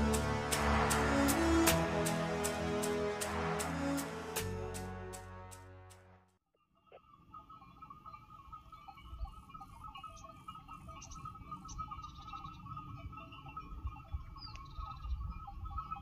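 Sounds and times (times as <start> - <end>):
small birds chirping: 7.4 - 16.0
wind rumble on microphone: 9.0 - 16.0.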